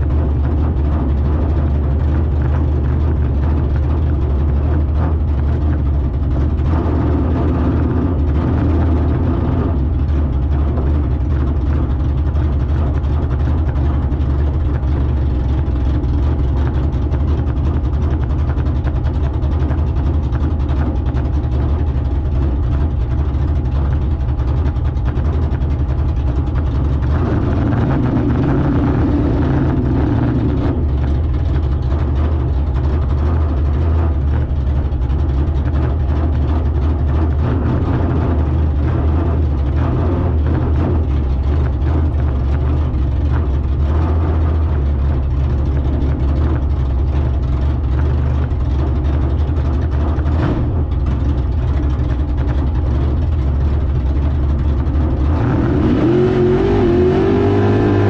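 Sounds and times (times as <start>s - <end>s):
vehicle engine idling low: 0.0s - 58.0s.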